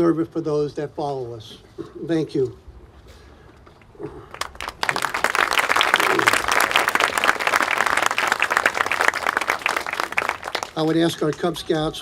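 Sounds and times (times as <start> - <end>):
crowd applauding: 4.3 - 11.6.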